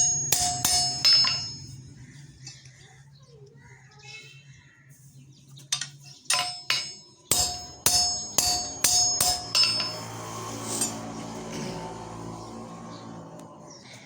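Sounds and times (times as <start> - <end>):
hammer striking steel rod: 0.0 - 1.8, 5.8 - 11.2.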